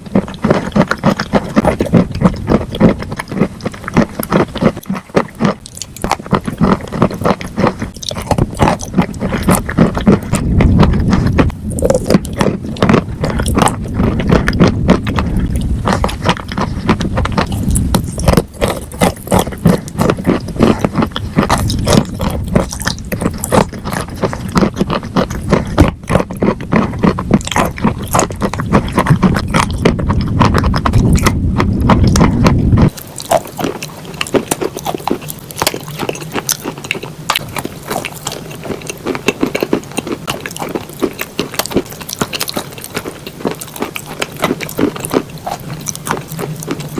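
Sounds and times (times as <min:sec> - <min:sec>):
person chewing crunchy food: 0:00.0 - 0:46.9
low rumble: 0:08.2 - 0:26.1, 0:26.8 - 0:34.2.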